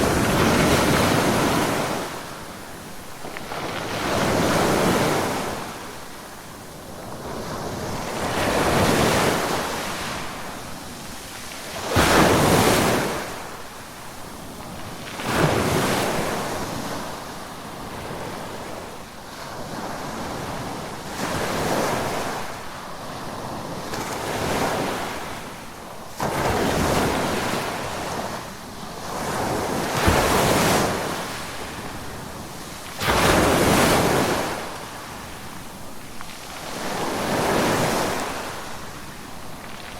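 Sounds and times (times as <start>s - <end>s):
ocean waves breaking on shore: 0.0s - 39.9s.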